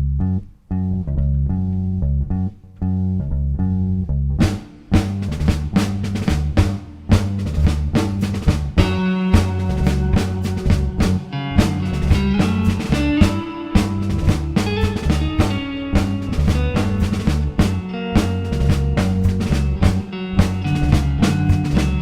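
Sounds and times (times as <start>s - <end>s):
bass guitar low notes: 0.0s - 22.0s
drum kit: 4.4s - 22.0s.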